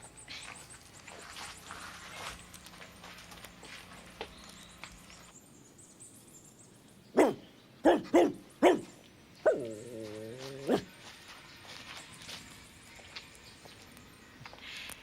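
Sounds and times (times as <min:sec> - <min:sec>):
dog barking: 0:07.2 - 0:09.9, 0:10.6 - 0:10.9.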